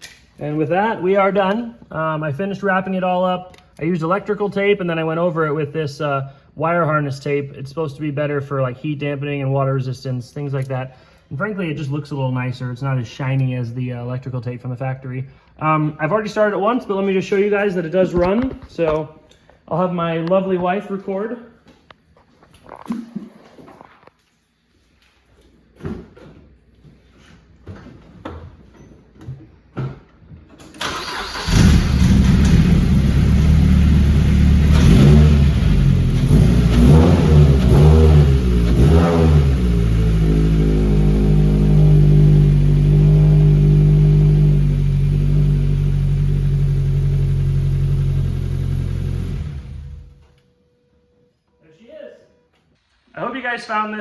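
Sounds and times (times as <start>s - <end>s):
car engine starting and revving: 30.8s - 50.2s.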